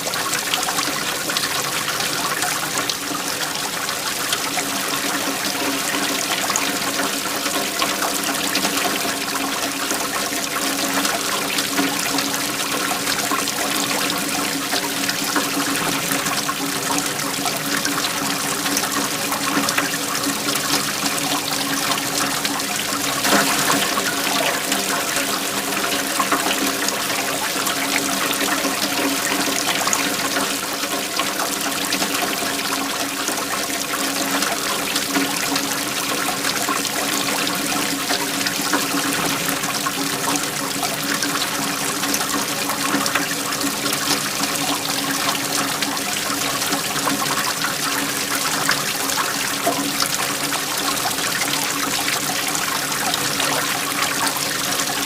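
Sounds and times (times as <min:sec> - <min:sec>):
waterfall rushing: 0:20.0 - 0:31.6.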